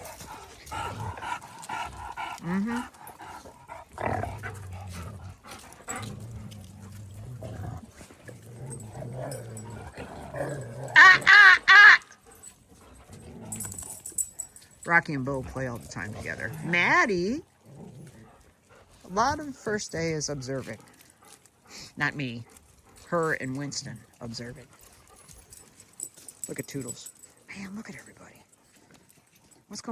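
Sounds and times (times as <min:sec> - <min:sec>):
dog growling: 0:00.0 - 0:14.6, 0:15.2 - 0:26.4.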